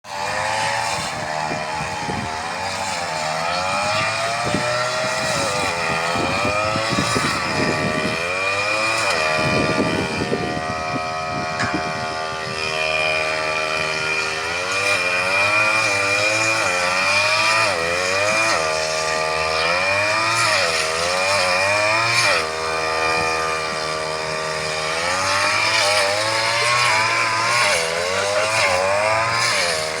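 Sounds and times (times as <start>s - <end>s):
brush cutter engine revving: 0.0s - 30.0s.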